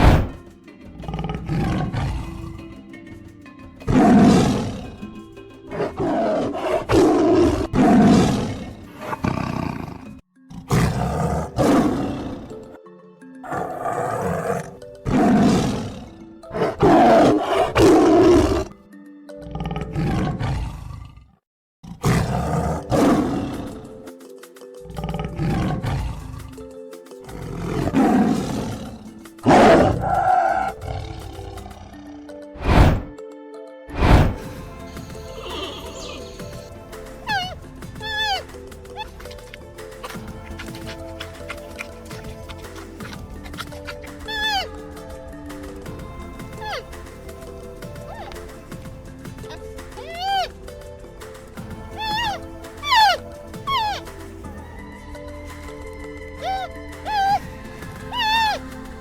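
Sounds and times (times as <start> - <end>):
animal roars: 0.0 - 0.4, 1.0 - 2.6, 3.9 - 5.0, 5.7 - 12.8, 13.4 - 18.8, 19.4 - 24.0, 24.9 - 26.5, 27.3 - 33.1, 33.9 - 44.8, 52.0 - 54.0
wild animal calls: 0.0 - 0.4, 1.0 - 2.7, 3.9 - 5.1, 5.7 - 12.8, 13.4 - 18.8, 19.4 - 24.0, 24.9 - 26.6, 27.2 - 33.1, 33.9 - 50.8, 51.4 - 54.4, 56.4 - 59.0
background music: 0.0 - 21.0, 22.0 - 59.0.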